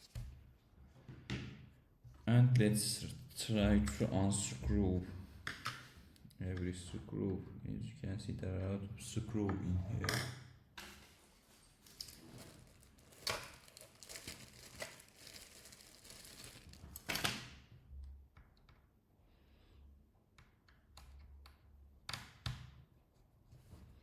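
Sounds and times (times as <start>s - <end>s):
small clicks and taps: 20.3s - 22.7s.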